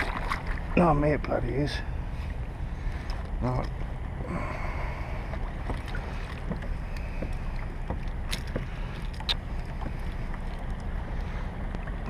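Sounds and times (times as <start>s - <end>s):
low rumble of wind and water: 0.0s - 12.0s
small knocks: 5.6s - 10.8s.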